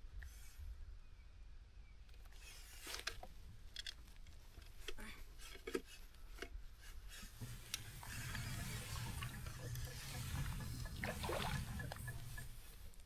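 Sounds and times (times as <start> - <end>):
small handling clicks and rustles: 2.0 - 11.0
steady low rumble: 7.3 - 13.0.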